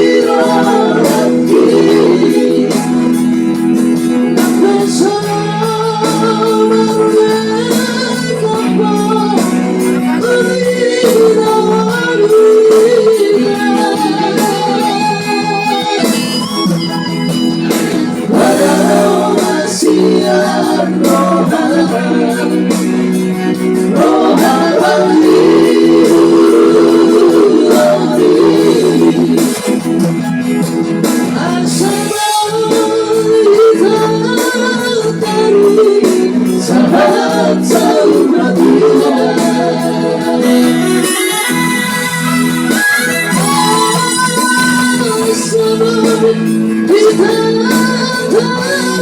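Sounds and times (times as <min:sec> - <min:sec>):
song with vibrato melody: 0:36.3 - 0:45.8.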